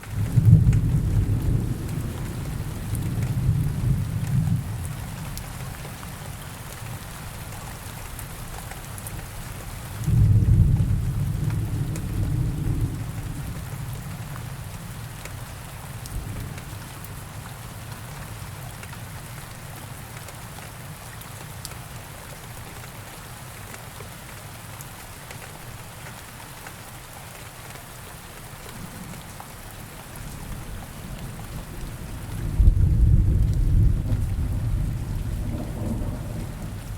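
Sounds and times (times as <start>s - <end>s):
steady rain falling: 0.0s - 36.9s
low thunder rumbling: 0.1s - 5.2s, 10.1s - 14.1s, 30.2s - 36.9s.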